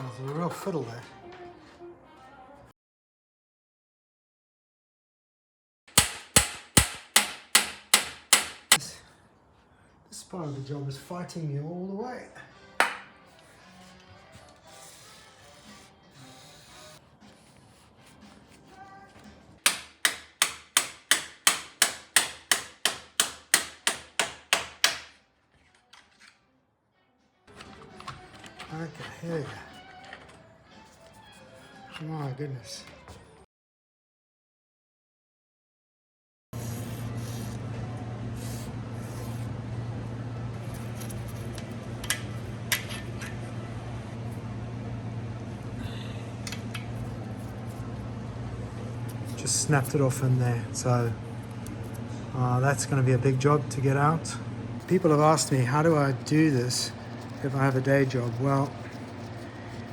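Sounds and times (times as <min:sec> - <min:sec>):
hammer striking metal: 0:05.9 - 0:08.8, 0:12.8 - 0:13.1, 0:19.7 - 0:25.1
steady low hum: 0:36.6 - 0:59.9.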